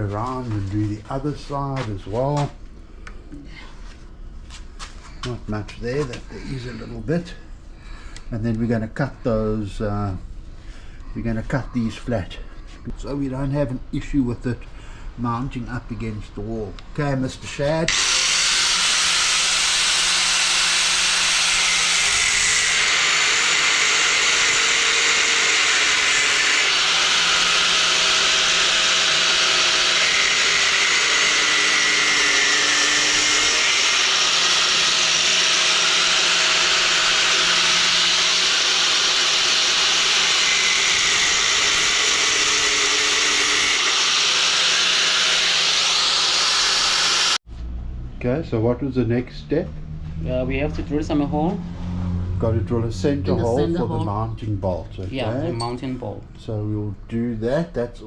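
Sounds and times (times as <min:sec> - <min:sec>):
angle grinder cutting metal: 0:17.9 - 0:47.4.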